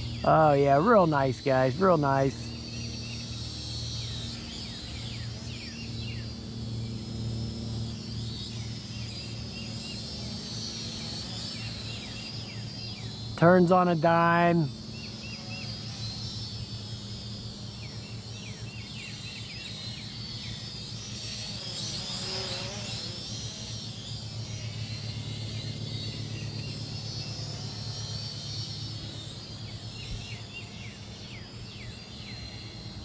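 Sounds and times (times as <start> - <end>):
drone propellers whining: 0.0 - 33.0
steady low hum: 0.0 - 33.0
short insect chirps: 14.8 - 33.0.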